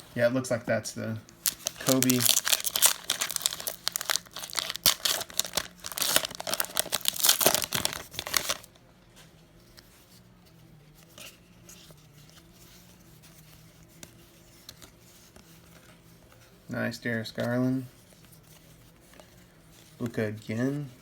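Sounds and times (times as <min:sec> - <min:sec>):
wrapper tearing and crinkling: 0:01.4 - 0:08.7.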